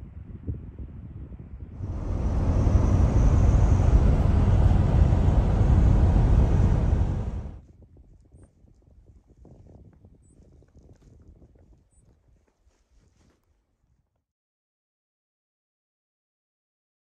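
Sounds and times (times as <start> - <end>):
vehicle rumble: 1.8 - 7.6.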